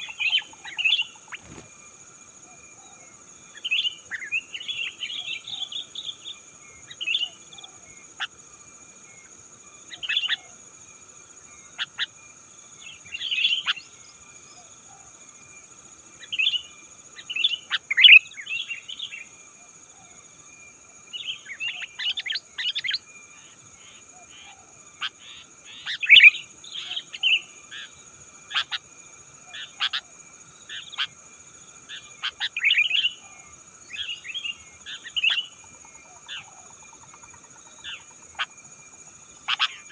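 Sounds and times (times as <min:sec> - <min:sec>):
high insect drone: 0:00.0 - 0:39.9
birds chattering calls: 0:39.4 - 0:39.9.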